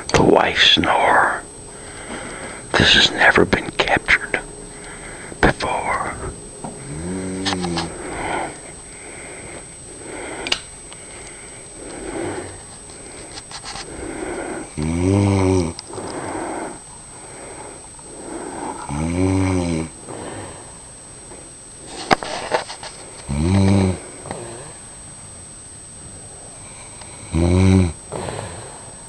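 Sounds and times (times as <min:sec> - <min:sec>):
soft breathing: 0:01.0 - 0:14.8, 0:15.9 - 0:19.0, 0:20.0 - 0:23.3
woman snoring: 0:05.6 - 0:08.6, 0:13.9 - 0:16.8, 0:17.5 - 0:20.7, 0:23.3 - 0:24.8, 0:26.8 - 0:28.8.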